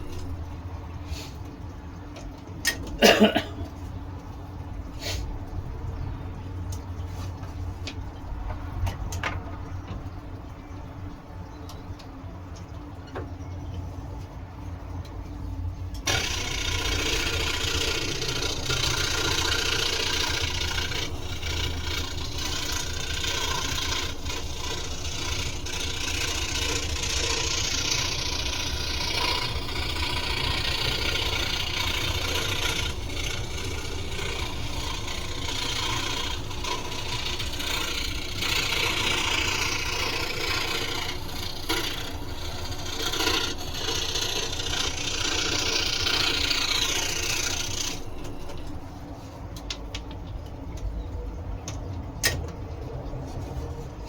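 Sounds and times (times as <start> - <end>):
scroll saw cutting wood: 0.0 - 0.4, 16.0 - 49.0.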